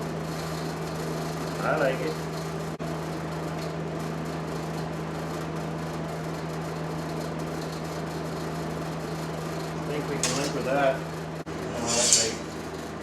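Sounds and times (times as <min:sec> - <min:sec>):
even hiss: 0:11.6 - 0:12.6.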